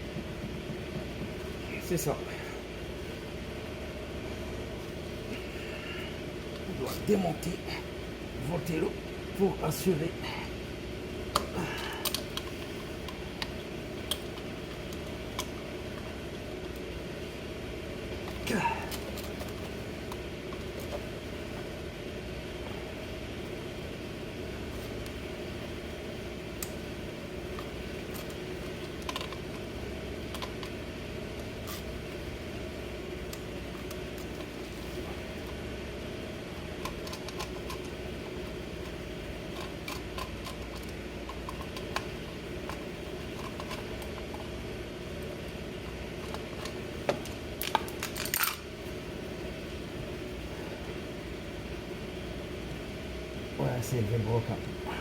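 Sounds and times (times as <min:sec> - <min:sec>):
steady mechanical hum: 0:00.0 - 0:55.0.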